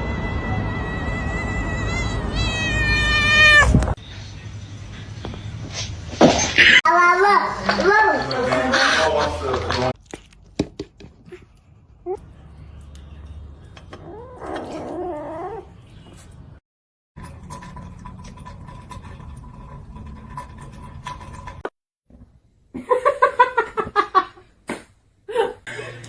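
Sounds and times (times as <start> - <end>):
cat meowing: 0.3 - 3.9, 13.9 - 15.7
cat short pitched cries: 0.7 - 3.8.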